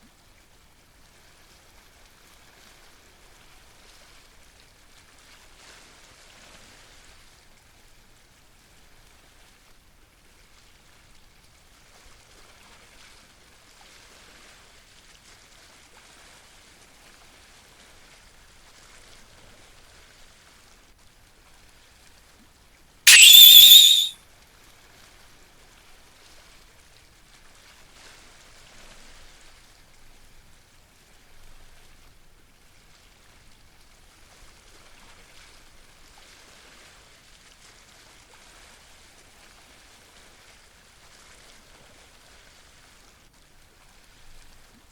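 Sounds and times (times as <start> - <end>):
loud high warbling tone: 23.1 - 24.1.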